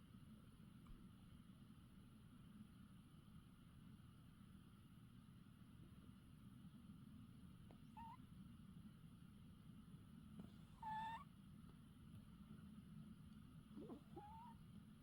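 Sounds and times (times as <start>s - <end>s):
squeaky snores: 13.8s - 14.6s.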